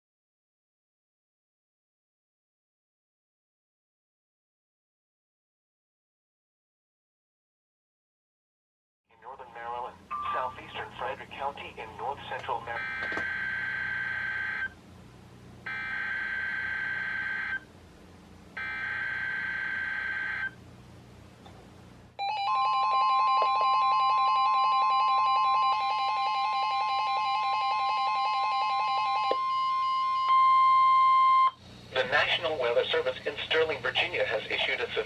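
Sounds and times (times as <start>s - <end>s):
radio beeping alert tones: 10.1s - 10.8s
steady warning alarm tone: 12.6s - 14.8s, 15.6s - 17.7s, 18.6s - 20.6s, 22.2s - 31.6s.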